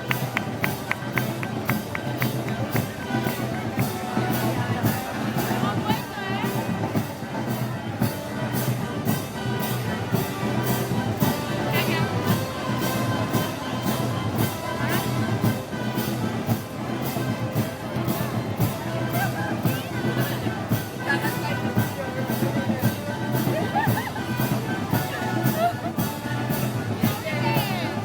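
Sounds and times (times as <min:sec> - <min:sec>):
brass band playing march: 0:00.0 - 0:28.0.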